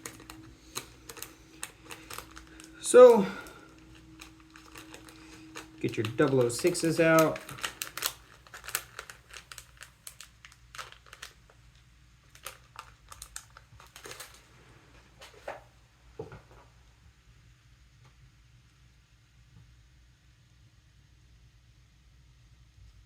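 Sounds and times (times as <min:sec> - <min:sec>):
plastic bag crinkling: 0:00.0 - 0:15.6.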